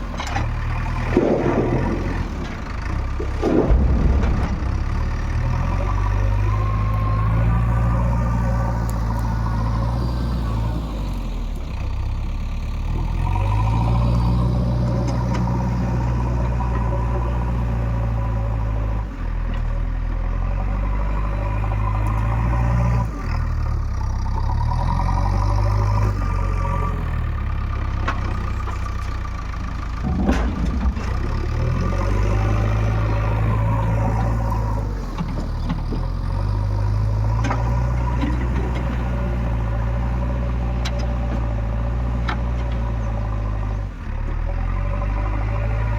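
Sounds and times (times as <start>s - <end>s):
metal clanks: 0.0s - 6.5s
diesel engine under load: 0.0s - 45.9s.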